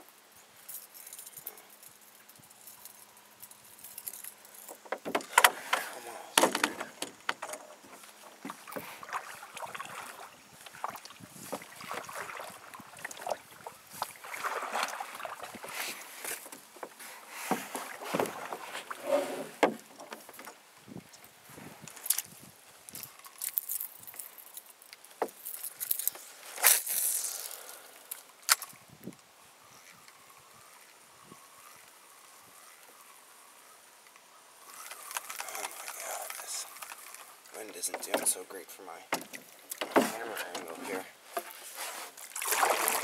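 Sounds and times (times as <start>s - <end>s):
water splashing around canoe: 4.8s - 20.7s, 39.0s - 43.0s.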